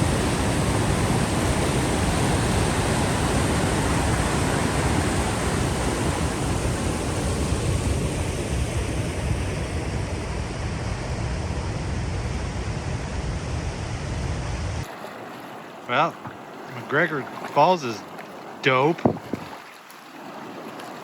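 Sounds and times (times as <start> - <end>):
waterfall roaring: 0.0 - 10.4, 14.3 - 19.6.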